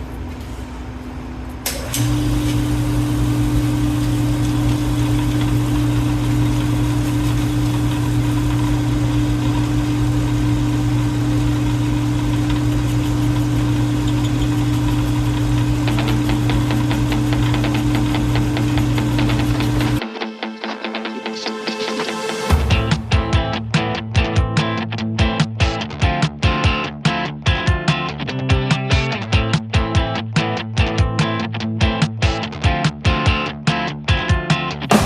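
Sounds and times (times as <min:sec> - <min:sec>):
lathe motor humming: 0:01.9 - 0:20.0.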